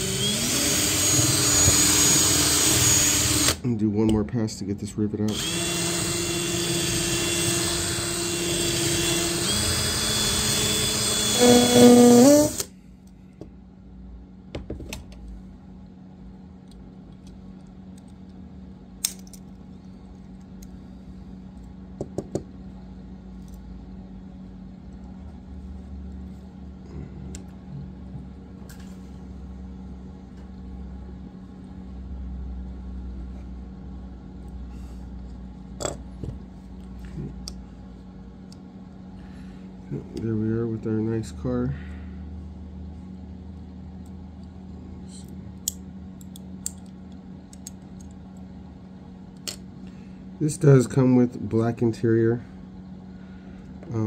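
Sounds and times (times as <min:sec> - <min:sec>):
power drill drilling metal: 0:00.0 - 0:03.6, 0:05.3 - 0:12.7
low steady hum: 0:00.0 - 0:54.0.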